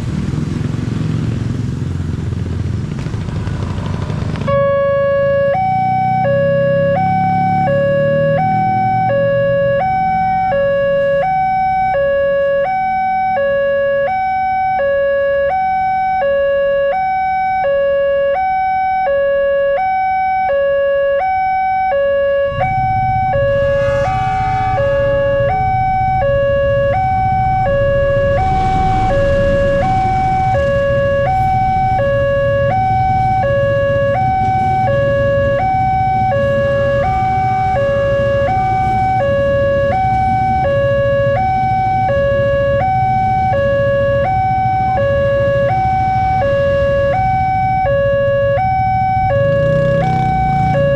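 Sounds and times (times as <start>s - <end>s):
train rushing past: 2.8s - 4.5s, 22.4s - 32.5s
two-tone crossing alarm: 4.4s - 50.9s
low rumble: 22.1s - 36.0s.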